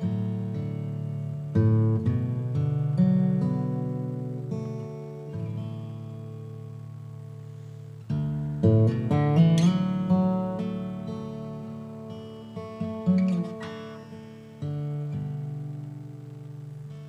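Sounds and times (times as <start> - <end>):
acoustic guitar plucked and strummed: 0.0 - 17.0.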